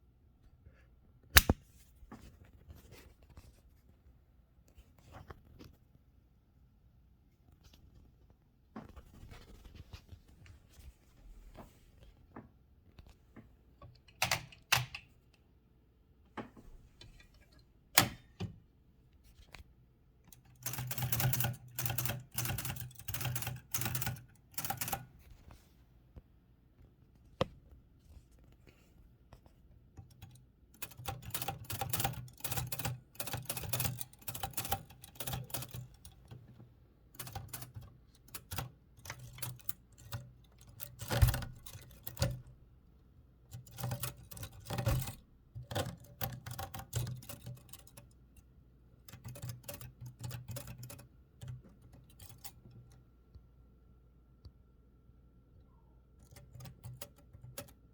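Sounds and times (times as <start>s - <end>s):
manual typewriter clacking: 20.4s - 25.0s, 30.8s - 36.2s, 37.2s - 42.5s, 43.6s - 48.0s, 49.1s - 52.7s.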